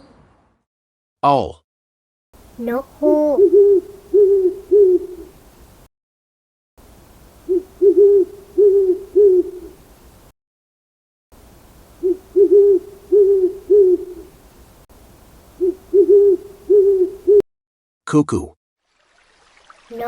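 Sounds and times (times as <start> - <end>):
owl hooting: 2.7 - 5.4, 7.4 - 9.8, 12.0 - 14.4, 15.5 - 17.4.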